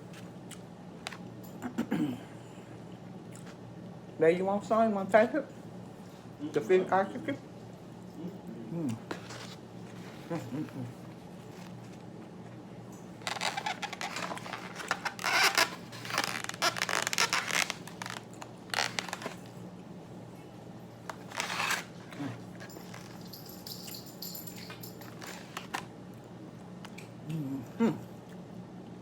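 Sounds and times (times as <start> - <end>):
scraping and rustling of packaging: 9.1 - 12.5, 13.1 - 19.6, 21.0 - 23.5, 25.1 - 25.9.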